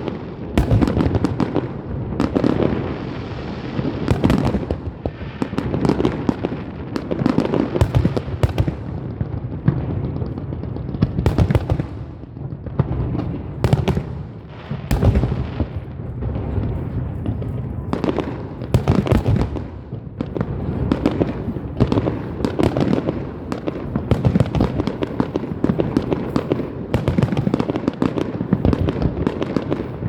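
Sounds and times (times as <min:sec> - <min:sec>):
fireworks bangs and crackles: 0:00.0 - 0:30.0
low rumble of explosions: 0:00.0 - 0:30.0.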